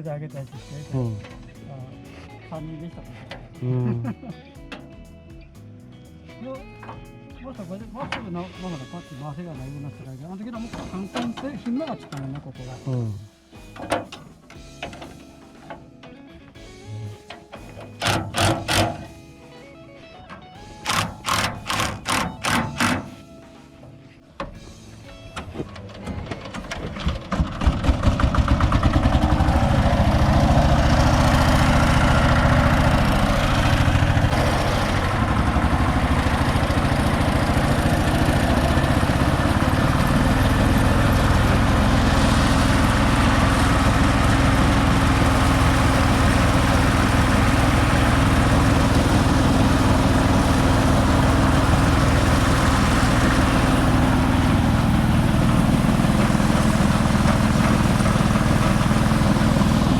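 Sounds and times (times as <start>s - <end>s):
harvester running: 16.8s - 59.9s.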